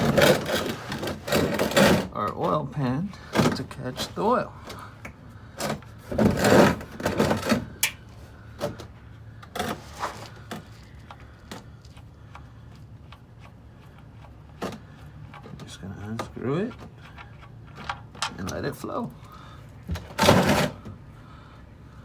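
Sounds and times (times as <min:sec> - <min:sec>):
drain pan scraping: 0:00.0 - 0:04.9, 0:05.6 - 0:07.8, 0:14.4 - 0:21.0.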